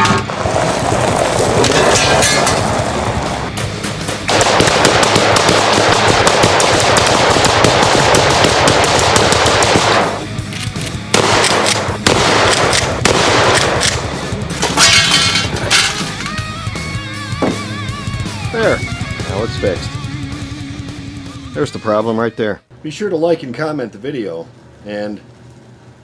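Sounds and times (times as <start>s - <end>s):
music: 2.6s - 6.6s, 7.4s - 22.7s
rapid automatic gunfire: 3.6s - 10.2s, 11.1s - 14.0s.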